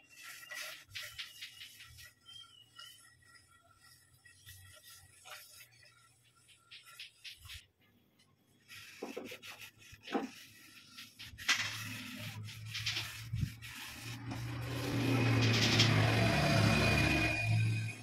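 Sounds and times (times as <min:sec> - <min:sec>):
wood rubbing and knocking: 0:06.3 - 0:07.6, 0:08.8 - 0:16.4
lathe motor hum: 0:11.5 - 0:18.0.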